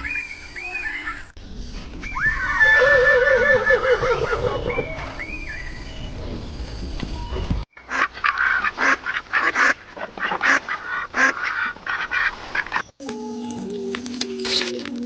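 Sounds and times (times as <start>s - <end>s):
waterfowl harsh calls: 7.9s - 12.8s.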